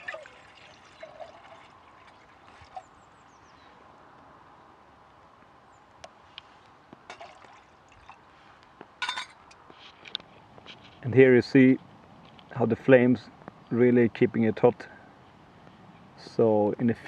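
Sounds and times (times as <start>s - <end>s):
water pouring into a mug: 0.0s - 2.8s, 7.1s - 8.2s.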